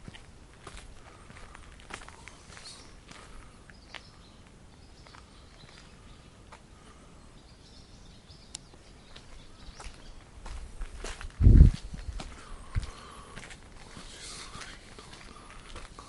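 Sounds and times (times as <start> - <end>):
faint bird chirps: 2.1 - 10.3.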